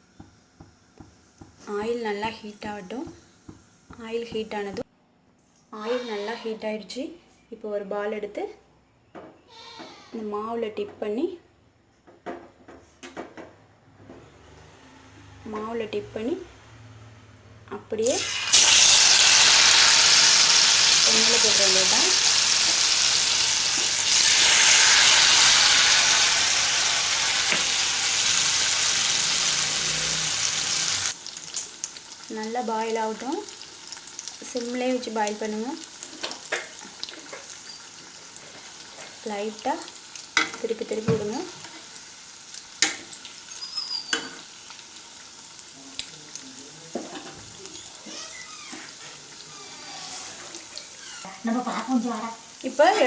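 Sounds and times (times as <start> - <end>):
balls deep-frying in hot oil: 17.8 - 53.0.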